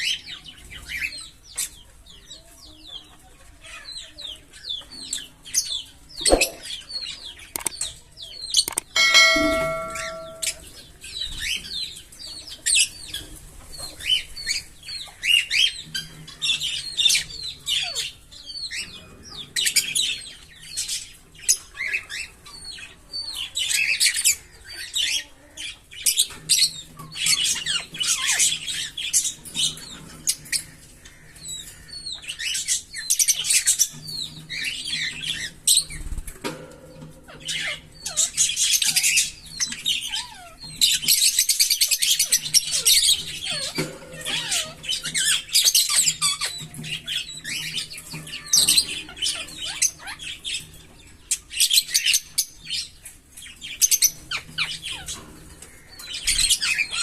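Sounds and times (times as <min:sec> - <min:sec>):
lovebirds chirping: 0:00.0 - 0:36.2
loud steady ringing tone: 0:08.9 - 0:10.6.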